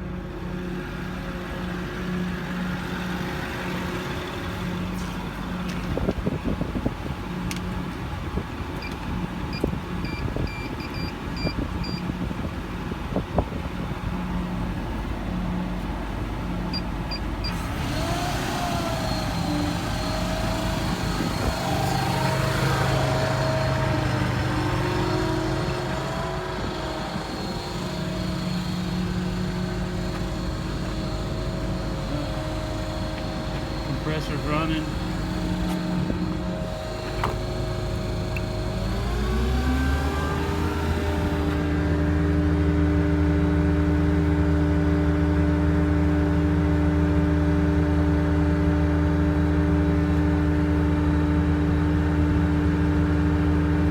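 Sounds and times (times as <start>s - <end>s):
diesel engine idling: 0.0s - 53.9s
air compressor rushing and whining: 1.0s - 45.0s
short electronic beeps: 8.8s - 12.0s.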